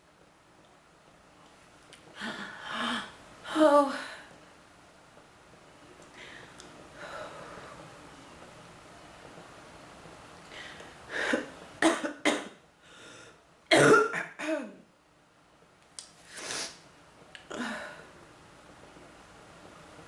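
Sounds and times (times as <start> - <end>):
noisy breaths: 6.1 - 8.0, 10.4 - 11.5
woman coughing: 11.3 - 12.6, 13.7 - 14.8.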